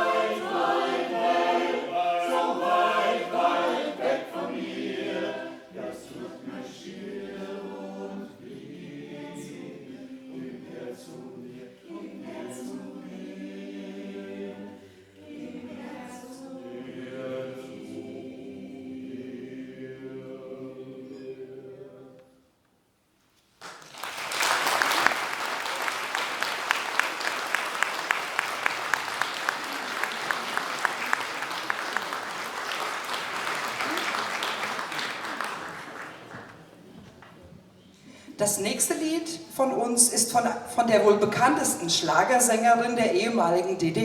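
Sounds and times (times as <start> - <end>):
vocal ensemble singing a cappella: 0.0 - 22.6
audience applause: 23.6 - 37.3.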